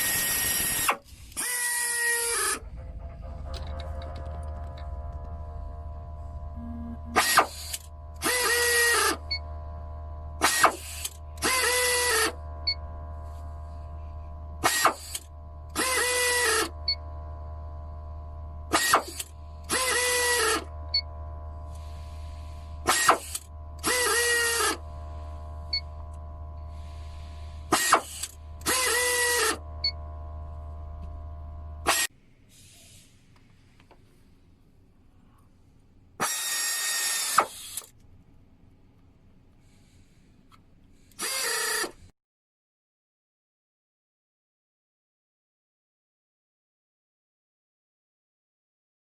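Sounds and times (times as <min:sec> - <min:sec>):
air ratchet wrench running: 0:00.0 - 0:02.6, 0:07.2 - 0:09.5, 0:10.4 - 0:13.8, 0:14.6 - 0:17.0, 0:18.7 - 0:30.0, 0:31.8 - 0:32.1, 0:36.2 - 0:37.9, 0:41.0 - 0:42.1
steady hum: 0:02.5 - 0:31.9.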